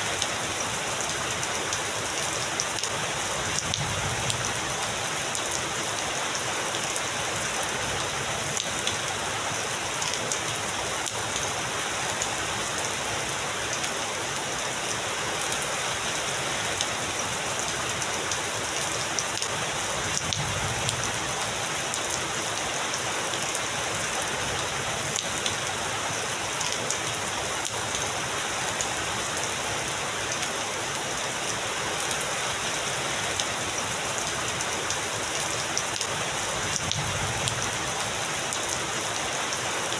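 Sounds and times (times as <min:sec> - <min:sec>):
heavy rain hissing: 0:00.0 - 0:39.9
raindrops ticking: 0:00.1 - 0:04.6, 0:16.7 - 0:22.2, 0:24.6 - 0:25.8, 0:33.3 - 0:38.8.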